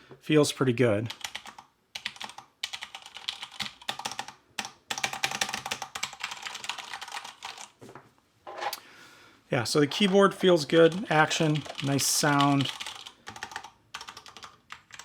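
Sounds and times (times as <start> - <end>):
fast typing on mechanical keyboard: 1.1 - 7.7, 9.9 - 15.0.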